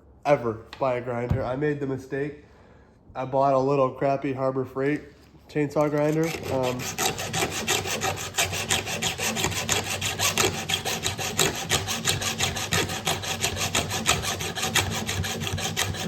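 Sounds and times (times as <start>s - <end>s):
hand file rasping on chain: 5.8s - 16.0s.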